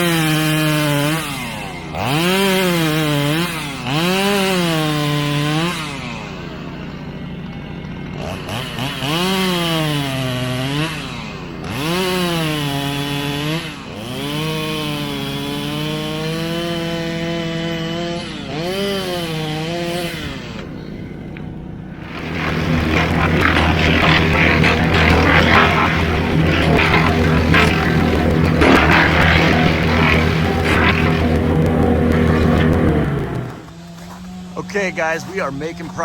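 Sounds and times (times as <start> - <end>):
chainsaw cutting wood: 0.0 - 36.0
rough low noise: 20.6 - 33.9.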